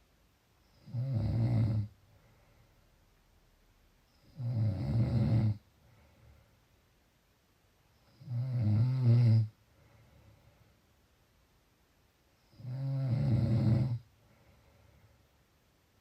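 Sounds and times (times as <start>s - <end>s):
quiet breathing: 0.6s - 3.3s, 4.0s - 7.0s, 7.9s - 11.2s, 12.3s - 15.7s
low-pitched snores: 0.7s - 2.0s, 4.2s - 5.6s, 8.1s - 9.6s, 12.5s - 14.1s.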